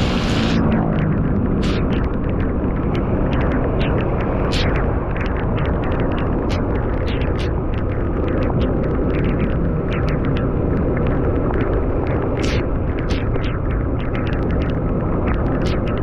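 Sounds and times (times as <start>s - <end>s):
heavy rain falling: 0.0s - 2.1s.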